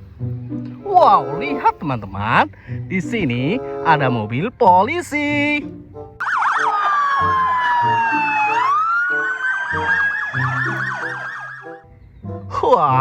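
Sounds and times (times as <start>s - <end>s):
background music: 0.0s - 13.0s
police siren warbling and wailing: 6.2s - 11.8s.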